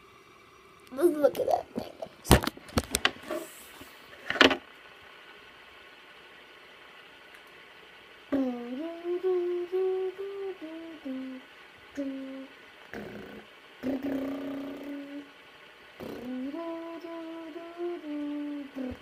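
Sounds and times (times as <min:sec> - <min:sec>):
person humming: 0:08.3 - 0:15.4, 0:16.0 - 0:19.0.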